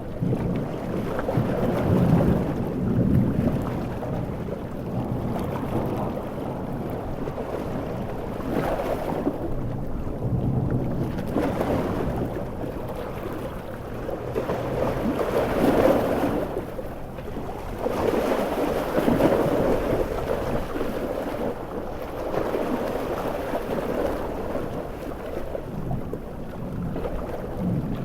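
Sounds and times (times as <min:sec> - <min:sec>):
ocean waves breaking: 0:00.0 - 0:28.0.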